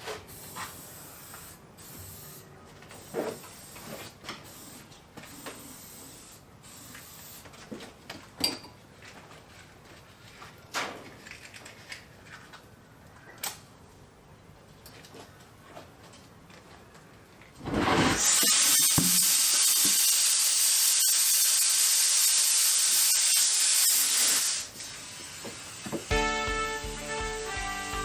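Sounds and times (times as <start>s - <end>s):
loud gas hiss: 17.7s - 26.2s.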